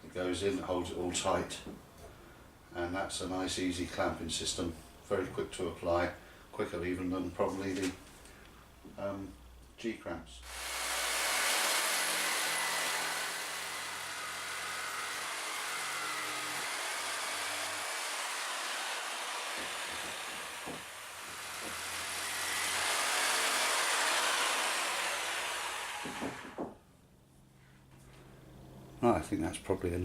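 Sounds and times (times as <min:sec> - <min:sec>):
electric power tool whining: 0:10.5 - 0:26.7.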